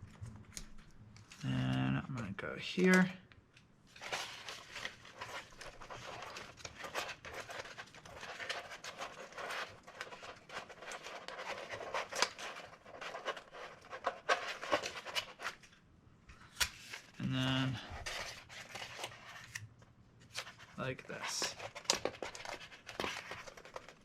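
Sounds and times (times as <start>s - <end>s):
adhesive tape rustling and crackling: 3.9s - 15.8s, 18.0s - 24.0s.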